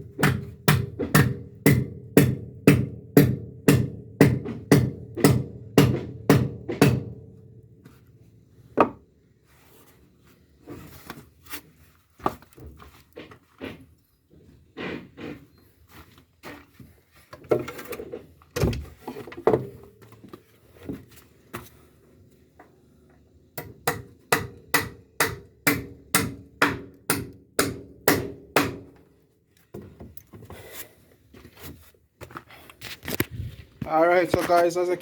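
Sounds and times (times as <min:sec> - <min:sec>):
hammer driving nails into timber: 0:00.0 - 0:07.3, 0:23.6 - 0:29.0.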